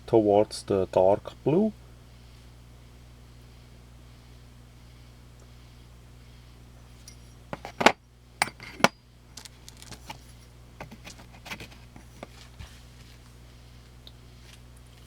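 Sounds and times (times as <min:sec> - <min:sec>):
metal knife scales clinking: 0:07.0 - 0:09.0.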